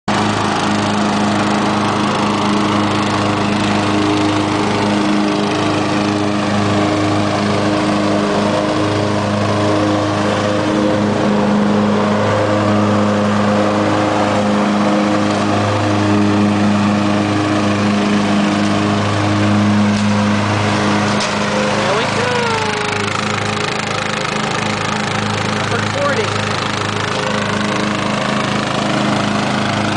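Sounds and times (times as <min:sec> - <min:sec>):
riding lawnmower engine running: 0:00.1 - 0:29.9
person speaking: 0:21.8 - 0:23.1, 0:25.6 - 0:26.4.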